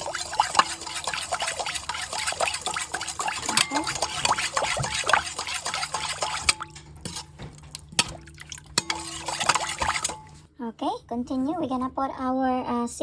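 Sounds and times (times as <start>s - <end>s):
broth bubbling in a pot: 0.0s - 10.4s.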